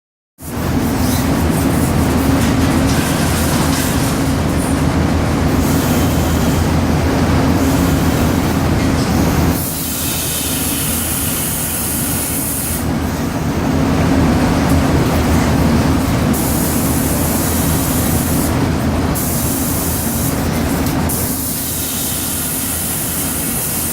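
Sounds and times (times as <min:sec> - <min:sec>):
industrial machinery hum: 0:00.4 - 0:23.9
high air hiss: 0:09.5 - 0:13.0, 0:21.1 - 0:23.9.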